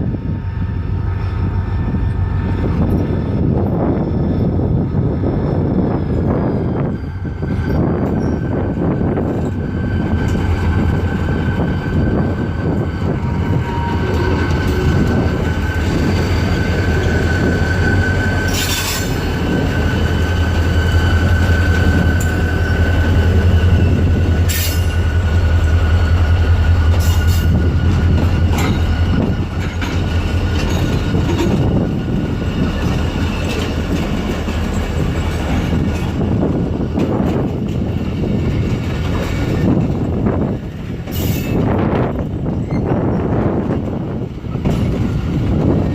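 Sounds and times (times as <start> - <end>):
deep train rumble: 0.0 - 45.9
train wheel squeal: 0.0 - 45.9
wheels clanking over rail joints: 26.6 - 45.9.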